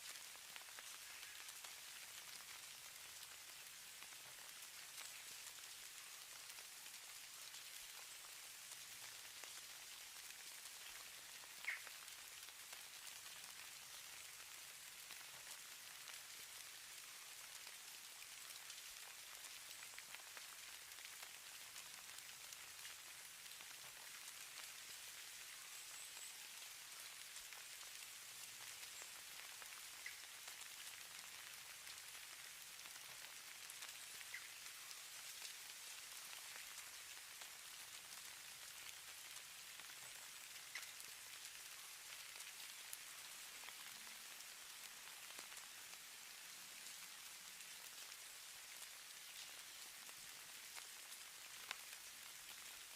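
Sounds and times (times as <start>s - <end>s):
soft ticks of landing flakes: 0.0s - 48.5s
hiss of falling snow: 0.0s - 52.9s.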